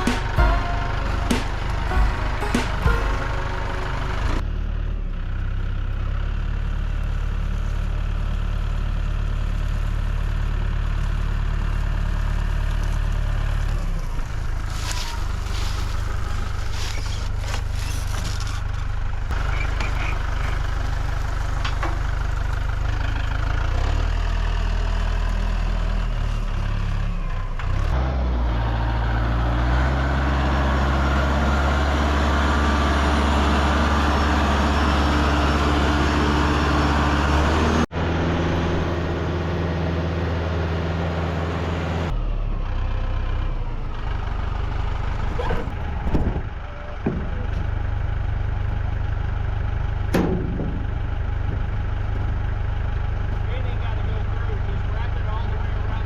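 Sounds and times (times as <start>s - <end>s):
engine running: 0.0s - 56.0s.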